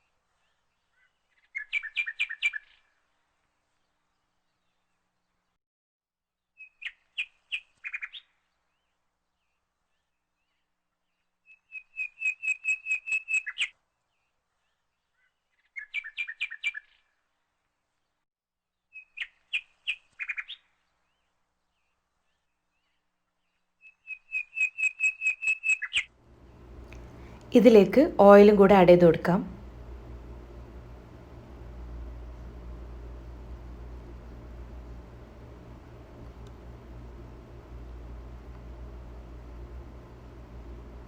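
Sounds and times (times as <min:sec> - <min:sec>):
bird chirping: 0:23.8 - 0:26.0.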